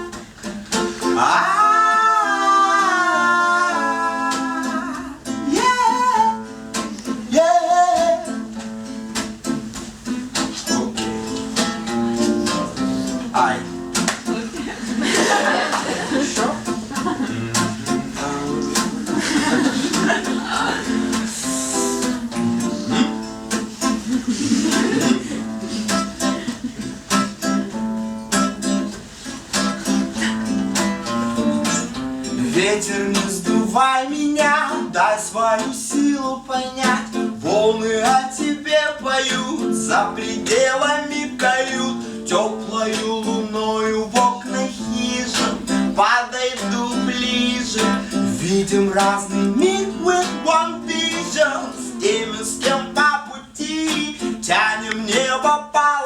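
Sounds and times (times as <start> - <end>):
acoustic guitar strumming: 0.0 - 56.0
person singing: 1.0 - 6.5, 16.1 - 23.3, 31.7 - 56.0.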